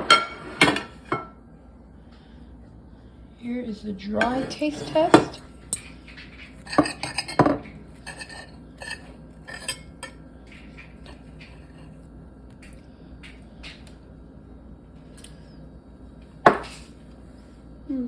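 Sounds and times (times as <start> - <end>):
cutlery clinking on a plate: 6.6 - 10.2.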